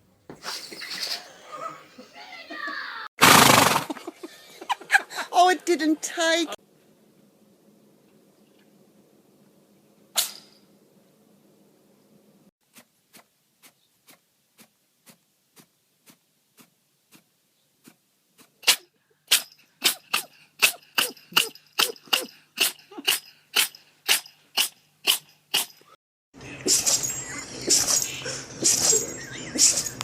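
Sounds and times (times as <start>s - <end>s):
animal sneezing: 0.3s - 2.2s, 18.7s - 25.7s.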